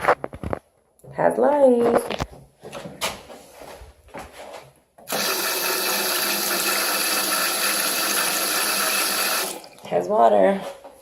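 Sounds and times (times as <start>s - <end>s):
water tap running: 5.1s - 9.9s.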